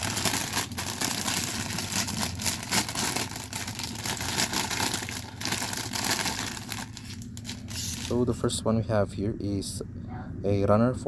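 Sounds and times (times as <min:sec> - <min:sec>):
plastic bag crinkling: 0:00.0 - 0:08.2.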